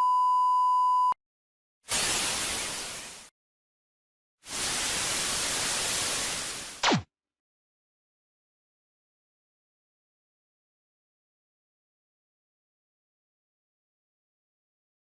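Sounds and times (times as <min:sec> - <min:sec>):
one-tone censor bleep: 0:00.0 - 0:01.2
static-like hiss bursts: 0:01.9 - 0:03.3, 0:04.5 - 0:07.0.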